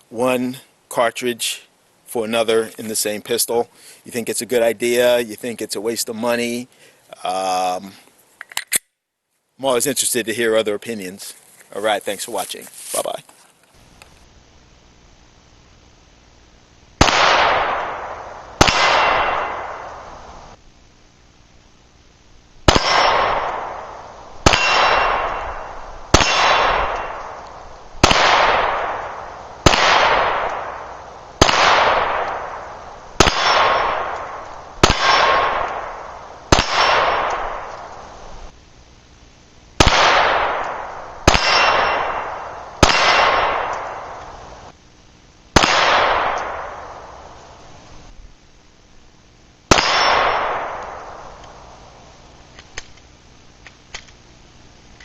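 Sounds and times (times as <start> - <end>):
pistol shots echoing: 17.0 - 20.0, 22.7 - 27.4, 28.0 - 38.0, 39.8 - 44.2, 45.6 - 47.2, 49.7 - 51.5.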